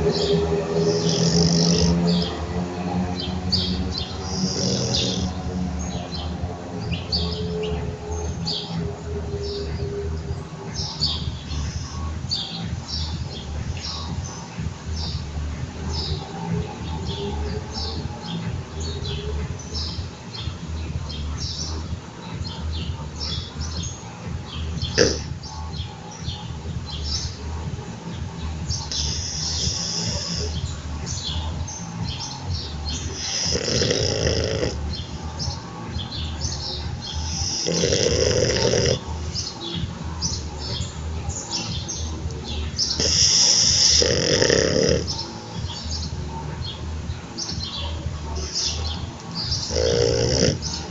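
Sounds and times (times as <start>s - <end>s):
dog snoring: 0.0s - 3.1s, 3.7s - 7.0s, 24.9s - 25.4s, 28.9s - 30.6s, 32.7s - 35.1s, 37.1s - 39.4s, 42.9s - 45.6s, 49.4s - 50.9s
dog breathing: 0.0s - 20.0s, 24.7s - 25.7s, 28.5s - 35.5s, 36.5s - 46.5s, 48.2s - 50.9s.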